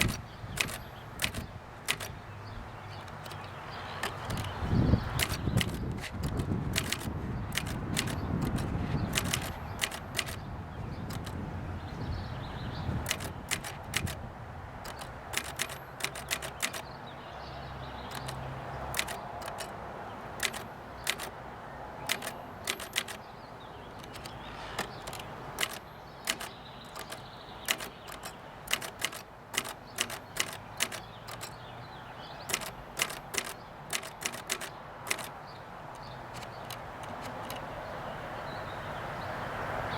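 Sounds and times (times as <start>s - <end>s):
typewriter key strikes: 0.0s - 2.2s, 3.0s - 10.4s, 11.1s - 11.4s, 13.0s - 14.2s, 14.8s - 16.9s, 18.1s - 19.8s, 20.4s - 21.4s, 22.0s - 23.2s, 24.0s - 31.6s, 32.4s - 37.7s.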